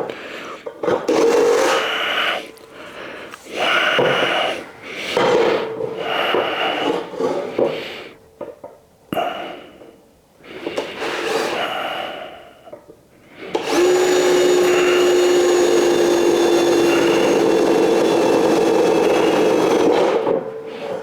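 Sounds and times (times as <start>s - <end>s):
electric drill cutting steel: 13.6s - 20.4s.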